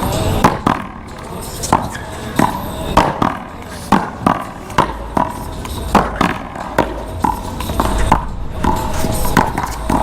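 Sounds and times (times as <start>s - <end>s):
ball striking wall: 0.4s - 1.0s, 1.7s - 10.0s
paddles hitting ball: 0.4s - 10.0s.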